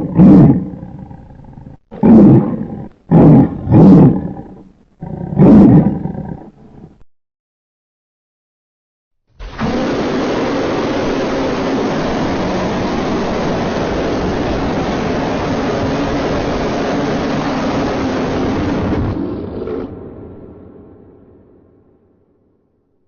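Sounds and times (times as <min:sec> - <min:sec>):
cartoon rumbling roar: 0:00.0 - 0:07.0, 0:09.4 - 0:20.7.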